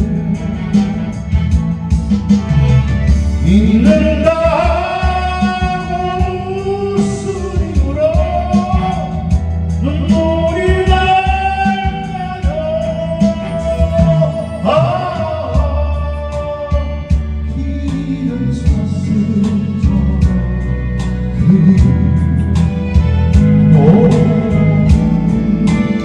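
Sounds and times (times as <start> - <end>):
backing track with bass drums guitar: 0.0 - 26.0
person singing a ballad: 0.0 - 26.0.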